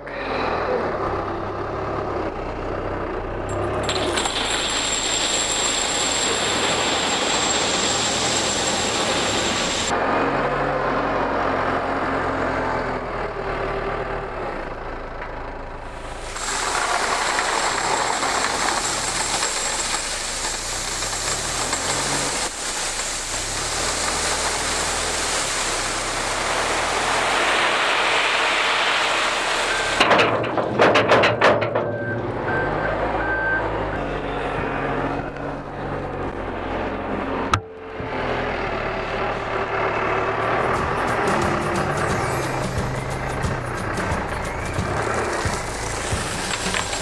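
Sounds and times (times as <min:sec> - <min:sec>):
diesel engine running: 0:00.0 - 0:47.0
gravel rushing into a bin: 0:03.9 - 0:09.2, 0:16.2 - 0:30.0
loud metal clanks: 0:30.0 - 0:32.1, 0:40.4 - 0:47.0
reversing alarm beeping: 0:31.8 - 0:35.8, 0:40.4 - 0:47.0.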